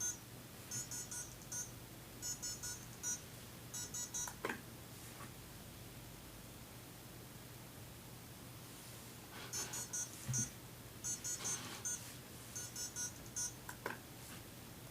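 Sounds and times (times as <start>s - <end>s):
buzzer short high beeps: 0.0s - 3.2s, 3.8s - 4.3s, 9.5s - 12.0s, 12.6s - 13.6s.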